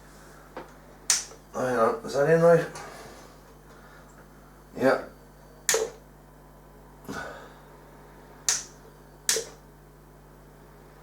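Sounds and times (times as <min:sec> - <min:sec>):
faint steady hum: 0:00.0 - 0:11.0
sharp short clicks: 0:01.1 - 0:01.4, 0:05.7 - 0:06.0, 0:08.5 - 0:09.6.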